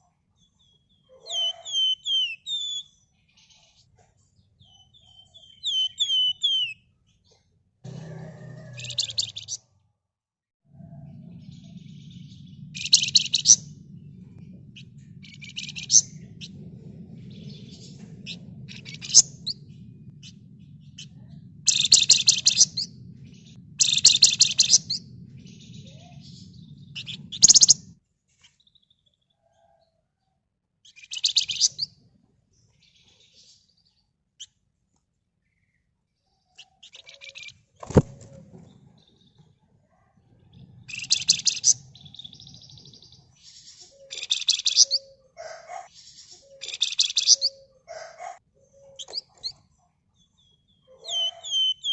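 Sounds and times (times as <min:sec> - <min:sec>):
songbird trilling: 0:01.2 - 0:02.9, 0:04.7 - 0:06.8, 0:08.0 - 0:09.6, 0:10.8 - 0:27.9, 0:30.9 - 0:31.9, 0:40.5 - 0:49.6, 0:50.7 - 0:51.9
steady low hum: 0:10.7 - 0:28.0, 0:40.3 - 0:45.1.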